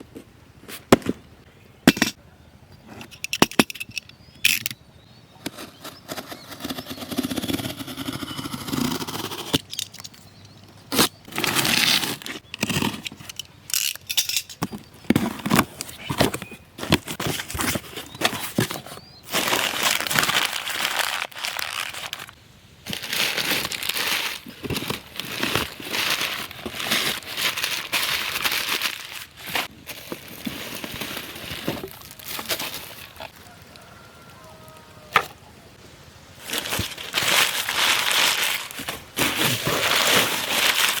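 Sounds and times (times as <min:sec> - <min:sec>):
plastic and cardboard crinkling: 0:14.6 - 0:33.9, 0:36.4 - 0:41.0.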